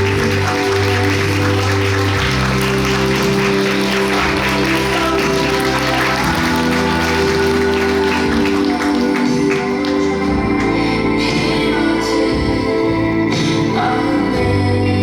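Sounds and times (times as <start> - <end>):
audience applause: 0.0 - 10.8
recorded music with bass notes: 0.0 - 15.0.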